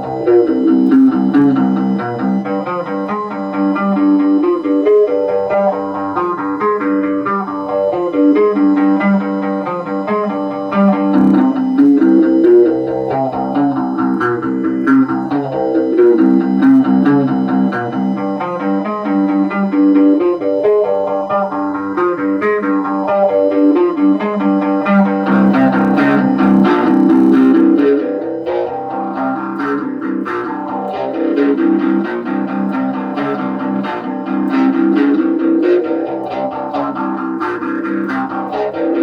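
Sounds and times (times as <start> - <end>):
electric guitar doom riffs: 11.1 - 12.4, 25.3 - 27.9.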